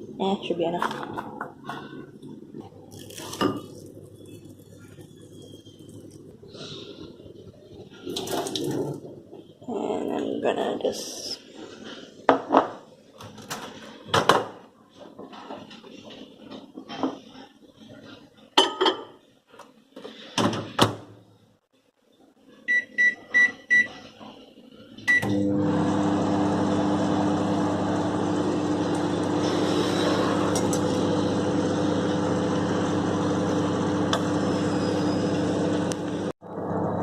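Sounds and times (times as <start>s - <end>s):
microwave oven humming: 1.2s - 9.6s, 24.8s - 37.0s
microwave keypad beeps: 22.7s - 24.0s.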